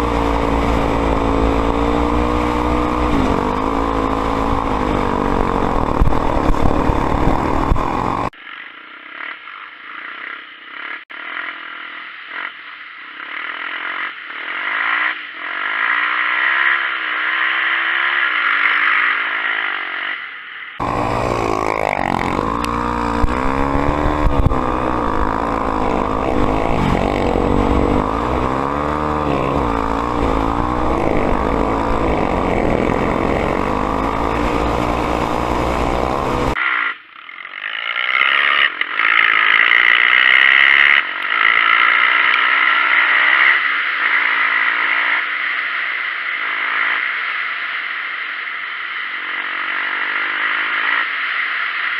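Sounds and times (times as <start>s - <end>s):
dirt bike engine revving: 0.0s - 8.4s, 20.8s - 36.9s, 37.6s - 45.2s.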